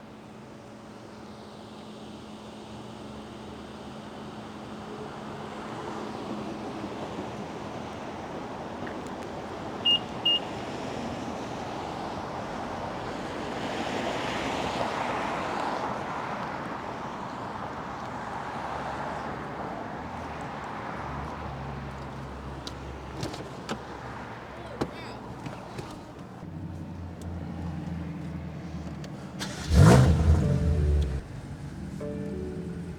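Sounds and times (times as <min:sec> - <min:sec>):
road and tyre noise: 0:00.0 - 0:32.9
low car engine hum: 0:18.2 - 0:32.9.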